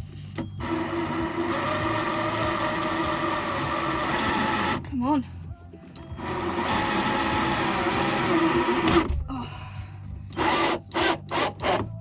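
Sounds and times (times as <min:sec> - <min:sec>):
power drill driving screw into metal: 0:06.2 - 0:09.1, 0:10.4 - 0:11.9.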